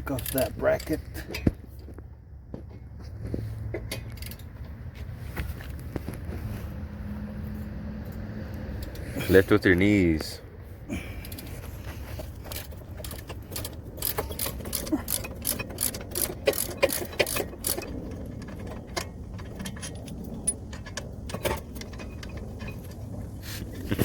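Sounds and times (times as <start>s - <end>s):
metal tools clicking and clinking: 0.0s - 1.5s, 3.8s - 4.8s, 12.2s - 23.1s
steady low rumble: 0.0s - 24.0s.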